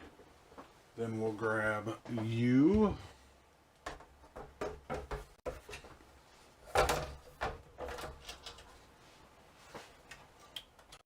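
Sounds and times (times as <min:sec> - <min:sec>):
objects knocking and clacking: 0:03.8 - 0:06.0, 0:06.7 - 0:08.7.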